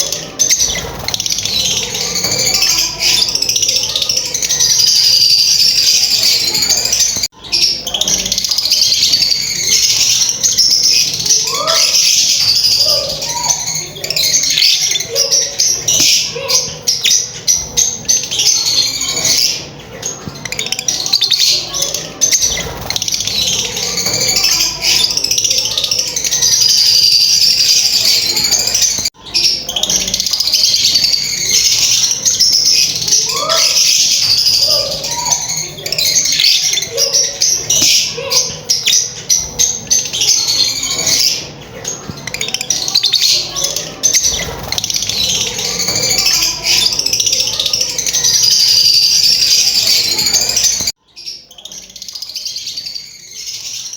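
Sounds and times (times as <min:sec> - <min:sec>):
lovebirds chattering and chirping: 0:00.0 - 0:53.9.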